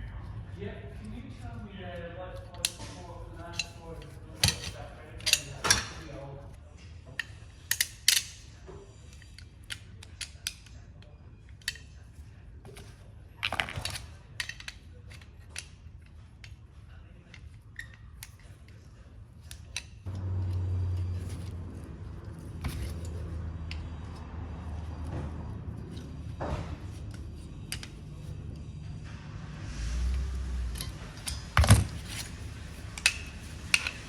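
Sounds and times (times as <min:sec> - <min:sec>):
metal parts rattling: 0:02.4 - 0:06.1, 0:12.8 - 0:28.8, 0:30.7 - 0:34.0.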